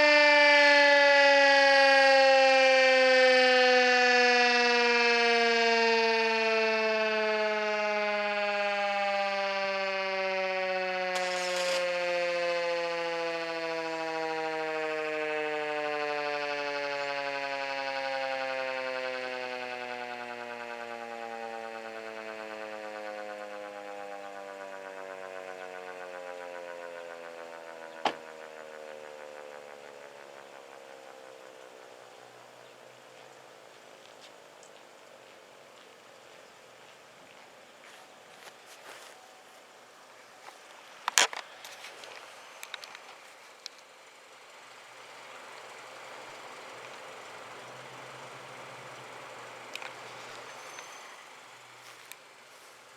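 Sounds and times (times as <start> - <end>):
warning siren winding down: 0.0 - 52.9
faint rustle: 33.2 - 44.0, 49.9 - 52.9.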